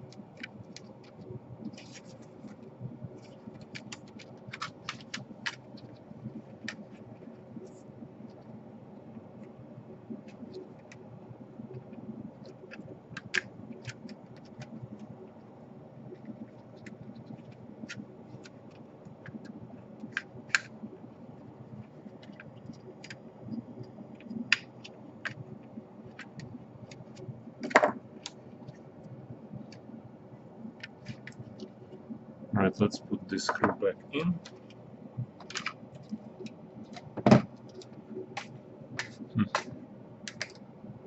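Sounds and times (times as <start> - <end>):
low hum: 5.2 - 41.0
clicks and taps of laptop parts: 40.3 - 40.6.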